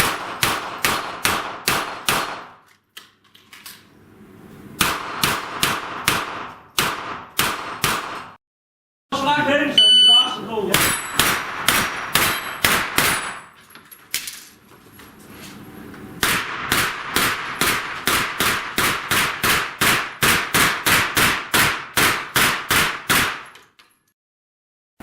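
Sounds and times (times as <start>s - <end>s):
rapid gunshots: 0.0s - 2.6s, 4.8s - 8.4s, 10.8s - 13.2s, 16.2s - 23.5s.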